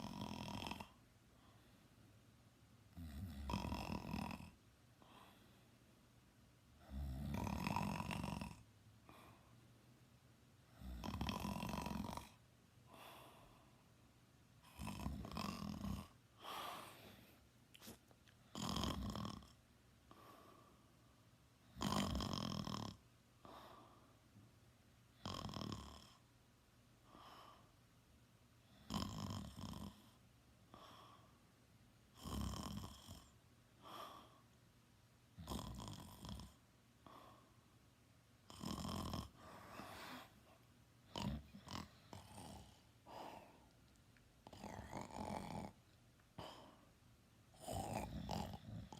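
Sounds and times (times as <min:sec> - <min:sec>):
person snoring: 0:00.0 - 0:01.0, 0:02.9 - 0:05.2, 0:06.8 - 0:09.4, 0:10.8 - 0:13.4, 0:14.6 - 0:17.2, 0:17.8 - 0:19.6, 0:21.7 - 0:23.0, 0:25.2 - 0:26.2, 0:28.8 - 0:30.1, 0:32.2 - 0:34.4, 0:35.4 - 0:36.6, 0:38.5 - 0:43.7, 0:44.4 - 0:45.8, 0:47.5 - 0:48.9
soft breaths: 0:00.8 - 0:02.2, 0:04.5 - 0:06.1, 0:06.7 - 0:10.0, 0:12.1 - 0:19.1, 0:20.0 - 0:21.5, 0:23.4 - 0:24.5, 0:27.0 - 0:27.9, 0:29.9 - 0:31.6, 0:33.1 - 0:34.7, 0:37.0 - 0:37.9, 0:38.5 - 0:48.9.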